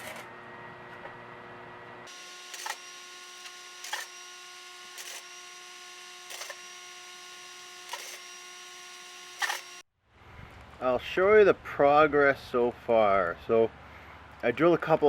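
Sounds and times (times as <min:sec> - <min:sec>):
machine hum: 0:00.0 - 0:09.8
welding crackling bursts: 0:02.1 - 0:09.8.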